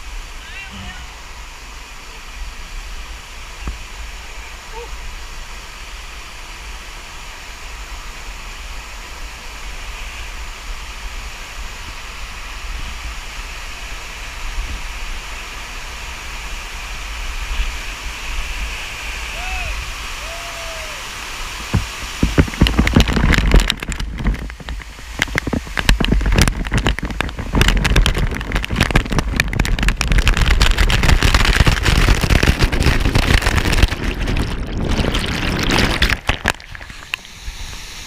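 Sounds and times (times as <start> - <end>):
waterfall rushing and splashing: 0.0 - 38.0
knocks and rumbling buffeting: 21.6 - 37.7.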